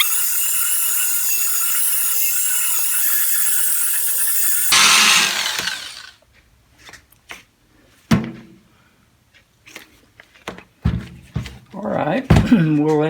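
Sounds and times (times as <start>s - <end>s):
power drill whine: 0.0s - 6.1s.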